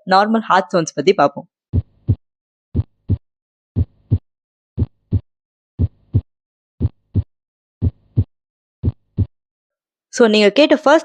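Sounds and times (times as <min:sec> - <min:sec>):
heartbeat lub-dub: 0:01.7 - 0:03.2, 0:03.8 - 0:04.2, 0:04.8 - 0:09.4.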